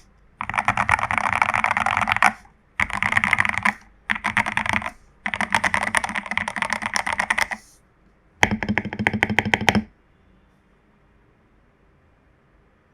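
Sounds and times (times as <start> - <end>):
rapid typing on mechanical keyboard: 0.4 - 7.7, 8.4 - 9.9.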